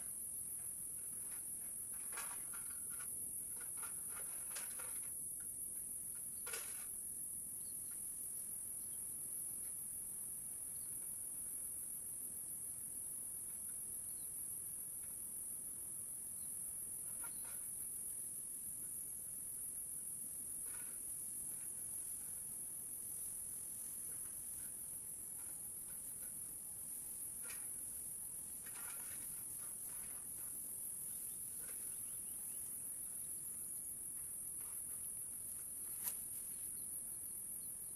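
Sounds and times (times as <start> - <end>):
insects chorusing: 0.0 - 37.9.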